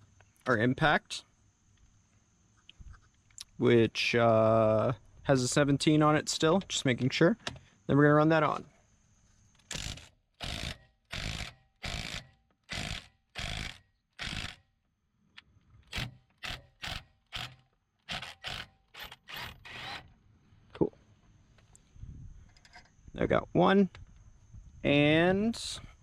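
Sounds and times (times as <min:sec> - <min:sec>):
impact wrench bursts: 0:09.7 - 0:14.7, 0:15.9 - 0:20.1.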